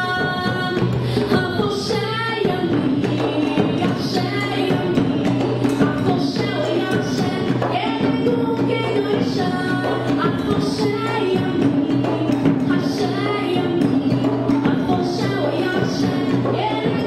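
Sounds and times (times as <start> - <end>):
person singing: 0.0 - 17.0.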